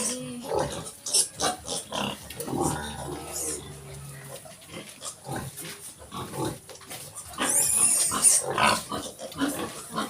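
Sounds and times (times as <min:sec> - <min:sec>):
piglets grunting: 0:00.0 - 0:10.0
piglet squealing: 0:07.2 - 0:08.6.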